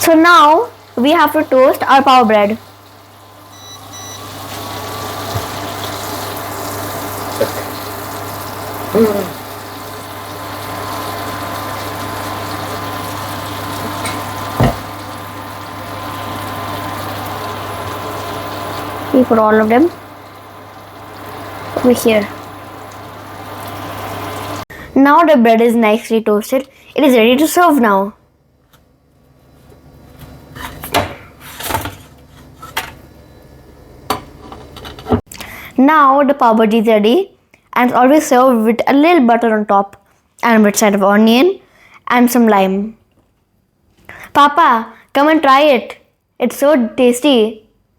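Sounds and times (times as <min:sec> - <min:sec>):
machine hum: 0:00.0 - 0:25.0
kitchenware knocks and clatters: 0:13.8 - 0:14.9
dull thump: 0:14.6 - 0:14.9.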